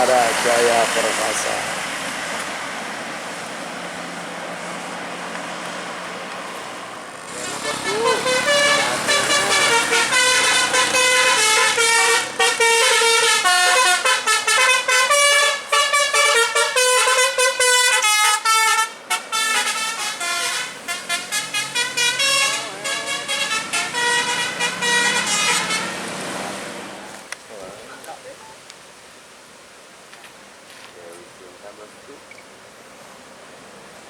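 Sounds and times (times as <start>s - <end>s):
multi-tone bus horn playing a tune: 7.4s - 26.4s.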